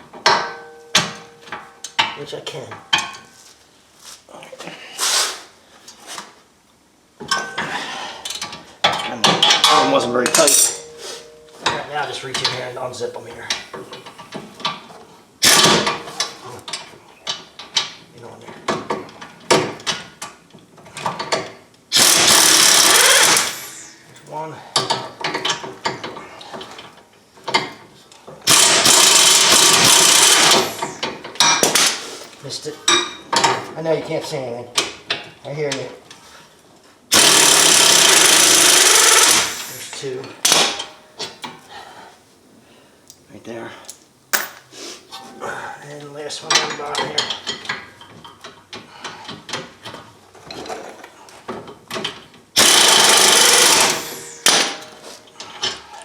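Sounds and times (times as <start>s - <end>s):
power wrench spinning a bolt: 15.4s - 15.8s, 21.9s - 24.0s, 28.5s - 31.1s, 37.1s - 40.7s, 52.6s - 55.0s
metal clinks: 43.8s - 45.4s.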